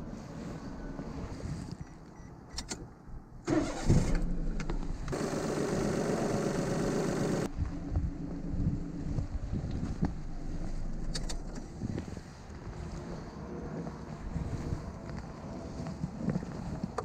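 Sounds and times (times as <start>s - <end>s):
car engine cranking and starting: 3.4s - 7.5s, 9.9s - 12.1s.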